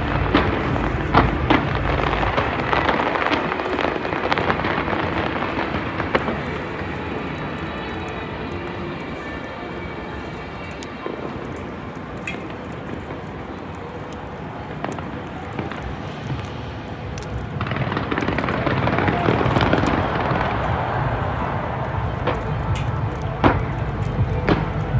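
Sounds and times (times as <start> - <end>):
distant firework bursts rumbling: 0.0 - 9.5, 14.8 - 24.9
sharp firework cracks: 0.0 - 24.9.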